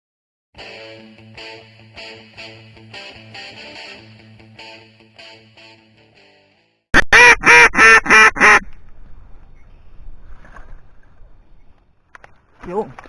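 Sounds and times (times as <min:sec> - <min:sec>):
duck quacks: 0:07.0 - 0:08.7.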